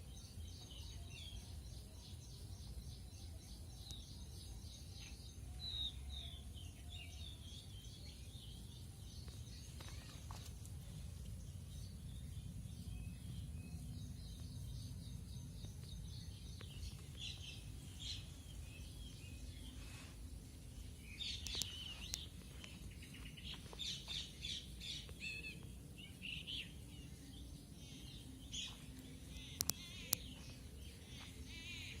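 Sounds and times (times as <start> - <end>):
small birds chirping: 0.0 - 32.0
steady low rumble: 0.0 - 32.0
sharp clicks: 29.5 - 30.2.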